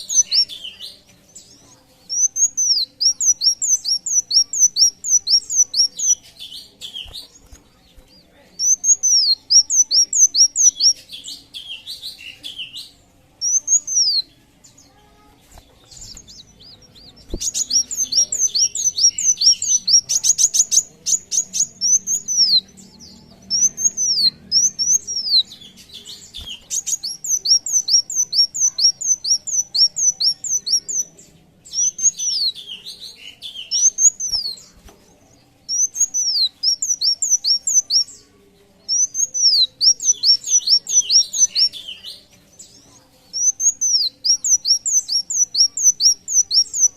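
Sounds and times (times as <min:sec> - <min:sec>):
bird chirping song: 0:00.0 - 0:46.9
fast rattling bird trill: 0:15.5 - 0:22.6.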